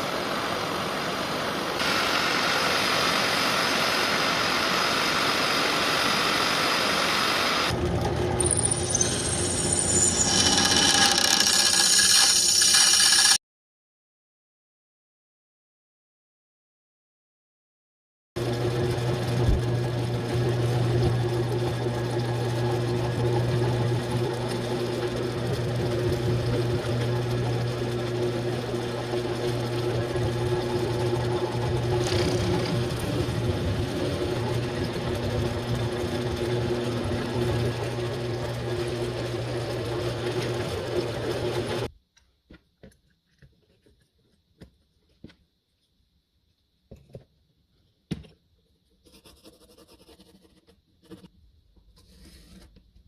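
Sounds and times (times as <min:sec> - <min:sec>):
power tool motor humming: 0:08.4 - 0:13.4, 0:26.8 - 0:41.9.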